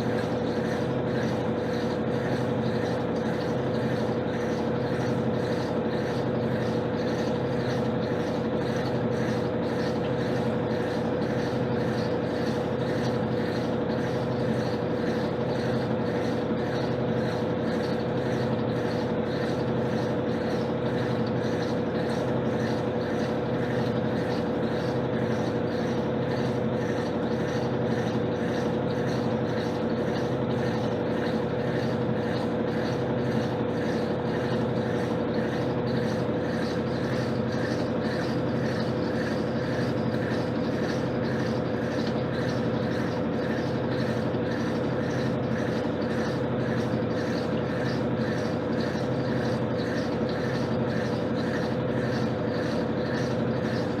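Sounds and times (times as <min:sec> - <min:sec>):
washing machine spinning: 0:00.0 - 0:54.0.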